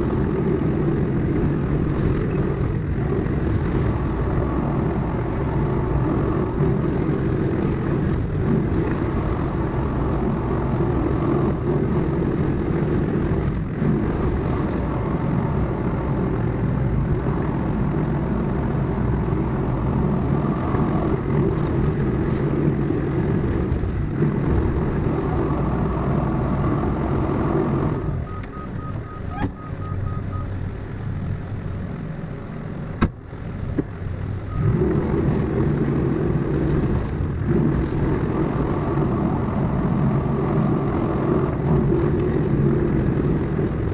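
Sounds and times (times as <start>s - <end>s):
diesel engine running hard: 0.0s - 43.9s
rapid beeps: 28.3s - 30.5s.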